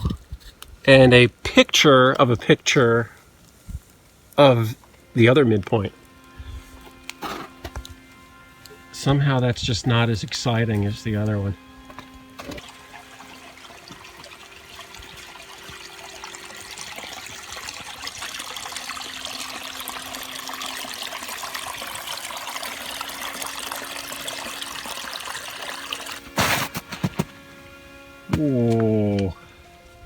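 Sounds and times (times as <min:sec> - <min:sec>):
water trickling: 0:10.8 - 0:29.3
loud rustle: 0:26.4 - 0:27.4.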